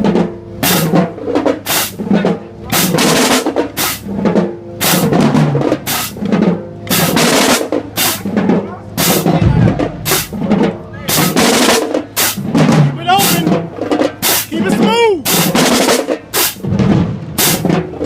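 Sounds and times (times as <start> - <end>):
snare drums rattling: 0.0 - 18.0
bass drum hits: 9.0 - 11.6.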